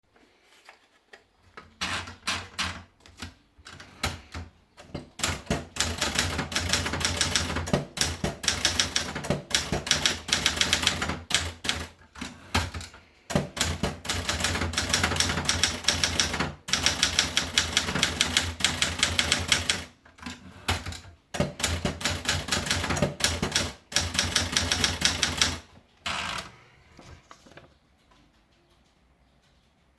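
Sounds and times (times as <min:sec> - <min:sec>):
typewriter keystrokes: 0:01.8 - 0:26.5.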